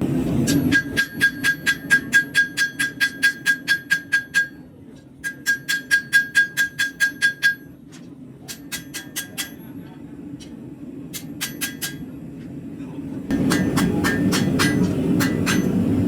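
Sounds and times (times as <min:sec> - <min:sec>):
hammer striking steel on anvil: 0:00.4 - 0:07.8, 0:08.4 - 0:09.8, 0:11.1 - 0:12.1, 0:13.3 - 0:16.0.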